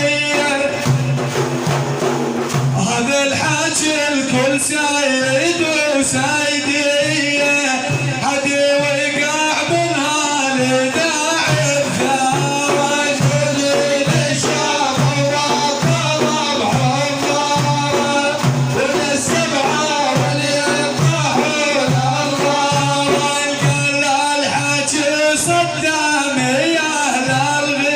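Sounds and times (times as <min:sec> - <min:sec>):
praise song melody: 0:00.0 - 0:27.9.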